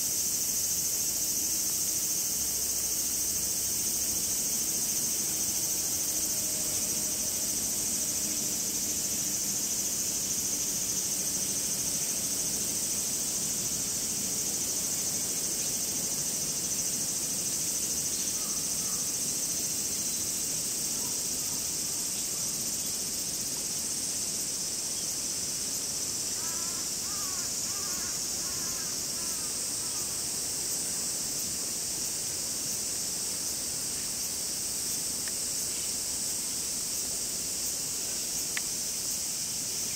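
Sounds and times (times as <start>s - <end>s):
cicadas chorus: 0.0s - 39.9s
crow cawing: 26.4s - 29.5s.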